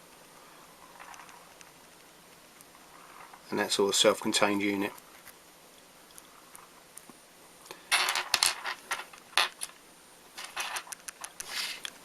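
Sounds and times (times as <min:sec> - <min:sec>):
small metal parts clinking: 0:07.9 - 0:09.8, 0:10.4 - 0:11.5.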